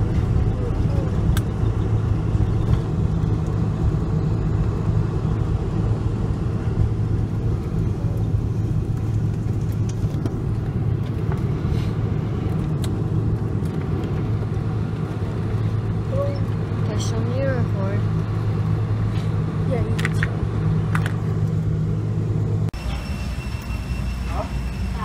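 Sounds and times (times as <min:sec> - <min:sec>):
vehicle interior rumble: 0:00.0 - 0:25.0.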